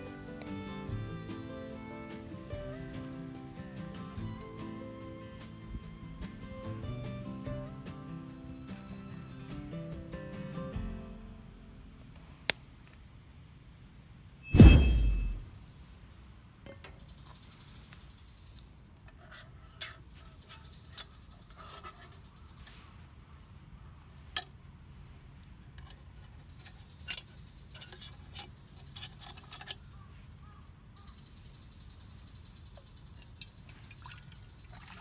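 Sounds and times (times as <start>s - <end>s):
metal cookware clank and ring: 14.5s - 15.5s.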